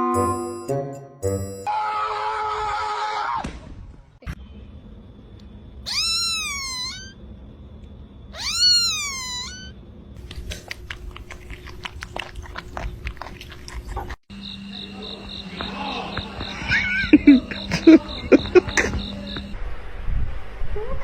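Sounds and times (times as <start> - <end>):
cat meowing: 5.9 - 7.2, 8.4 - 9.7
loud wavering cry: 5.9 - 7.2, 8.4 - 9.8.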